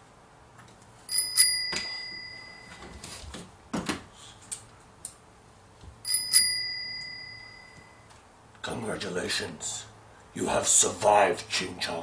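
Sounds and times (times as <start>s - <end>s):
small metal bell ringing: 1.1s - 3.0s, 6.0s - 8.1s.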